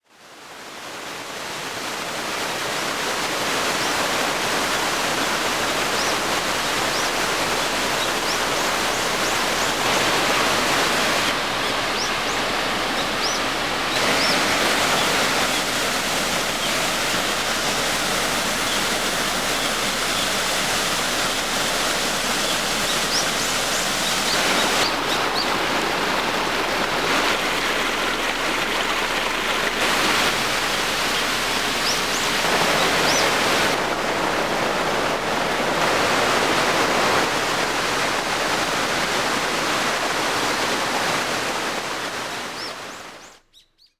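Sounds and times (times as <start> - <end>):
waterfall rushing: 0.3 - 43.2.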